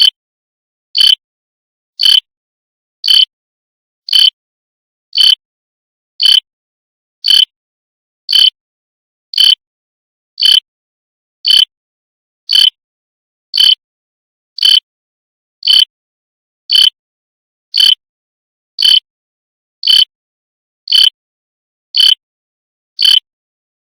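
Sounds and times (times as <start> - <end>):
alarm clock chirping: 1.0 - 1.2, 2.0 - 2.3, 3.0 - 3.3, 4.1 - 4.3, 5.2 - 5.4, 6.2 - 6.4, 7.2 - 7.5, 8.3 - 8.5, 9.4 - 9.6, 10.4 - 10.6, 11.5 - 11.7, 12.5 - 12.8, 13.6 - 13.8, 14.6 - 14.8, 15.6 - 15.9, 16.7 - 16.9, 17.8 - 18.0, 18.8 - 19.0, 19.8 - 20.1, 20.9 - 21.1, 22.0 - 22.2, 23.0 - 23.2.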